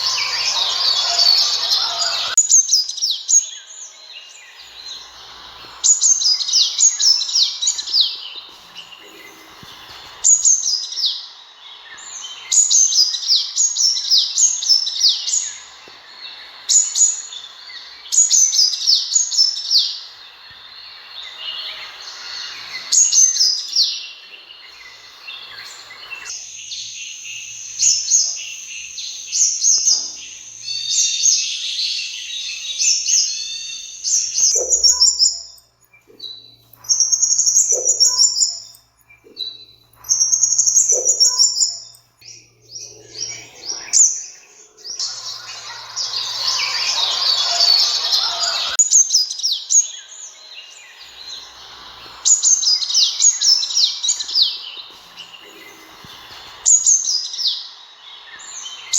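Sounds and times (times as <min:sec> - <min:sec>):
bird chirping and trilling: 0:00.0 - 0:11.4, 0:20.9 - 0:58.9
rushing noise: 0:45.0 - 0:48.8.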